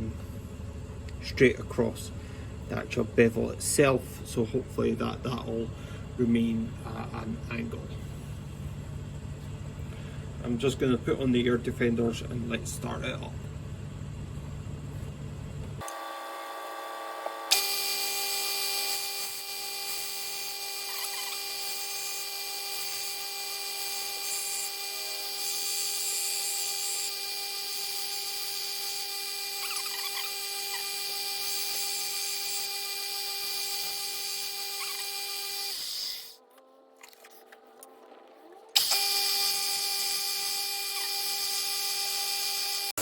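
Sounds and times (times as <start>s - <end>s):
belt sander whining: 15.8s - 36.4s, 38.7s - 43.0s
chisel grinding on belt: 18.5s - 36.4s.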